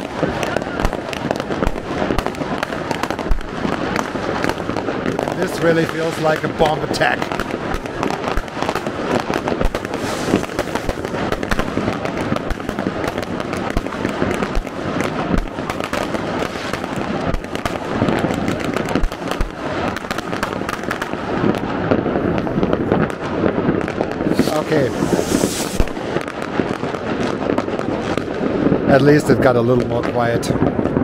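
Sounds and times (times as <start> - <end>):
fireworks banging: 0.0 - 31.0.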